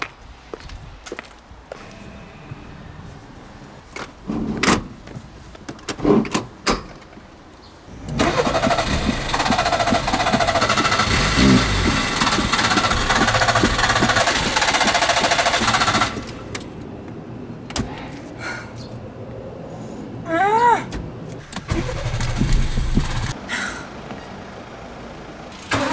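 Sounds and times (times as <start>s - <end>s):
car starter motor cranking: 8.0s - 16.7s, 21.4s - 23.4s, 25.5s - 25.9s
knocks and clicks: 8.1s - 16.7s, 20.9s - 23.4s.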